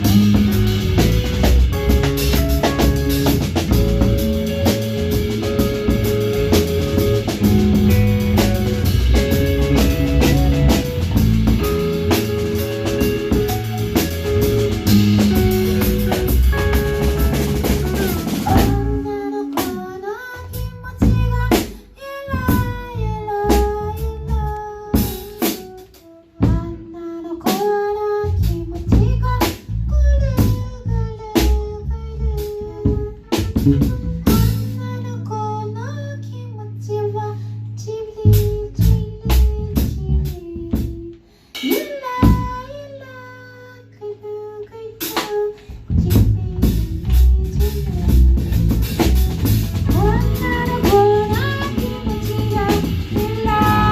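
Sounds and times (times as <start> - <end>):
melodic line with bending notes: 0.0 - 21.3, 46.4 - 53.9
live band playing: 0.0 - 35.8, 36.7 - 53.9
cymbals: 41.4 - 43.0.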